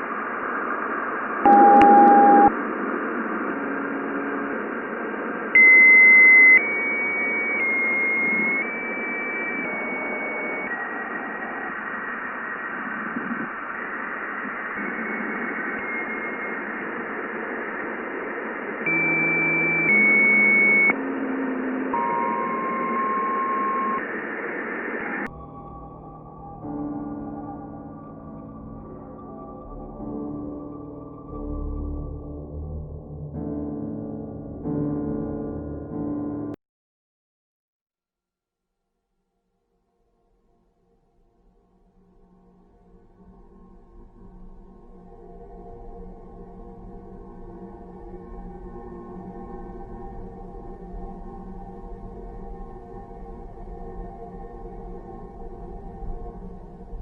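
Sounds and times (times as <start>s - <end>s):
static hiss: 0.0s - 20.9s
held tones jumping in pitch: 1.5s - 2.5s.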